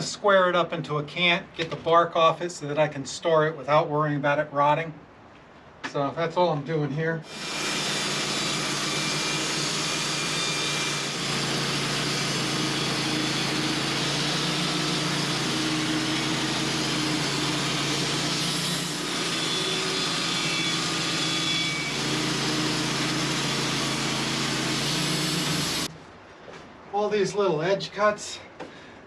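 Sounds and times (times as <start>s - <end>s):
band sawmill cutting log: 7.2s - 25.9s.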